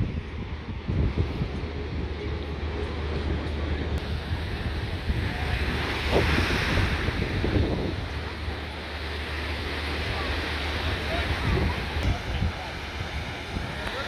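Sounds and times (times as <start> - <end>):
wind buffeting microphone: 0.0 - 14.0
surf breaking on beach: 4.0 - 14.0.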